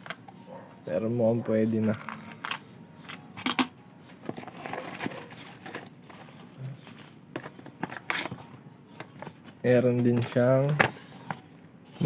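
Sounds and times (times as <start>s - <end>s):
plastic packaging clicks and crinkling: 4.3s - 8.4s.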